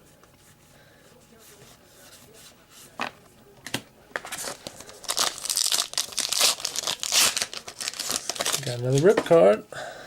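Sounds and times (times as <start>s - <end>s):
plastic wrapper crinkling and tearing: 4.2s - 9.2s.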